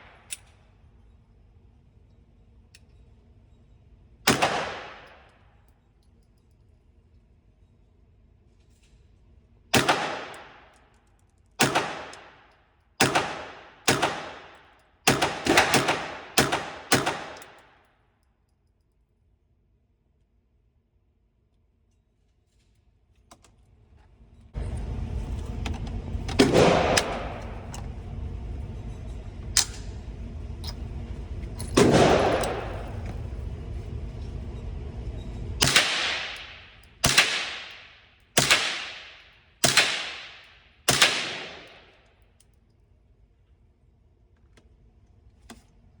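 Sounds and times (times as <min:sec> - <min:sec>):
pistol shots with echo: 0:04.3 - 0:05.3, 0:09.7 - 0:10.7, 0:11.6 - 0:17.6, 0:26.4 - 0:27.6, 0:31.8 - 0:33.0, 0:35.6 - 0:42.0
steady low noise: 0:24.6 - 0:42.0.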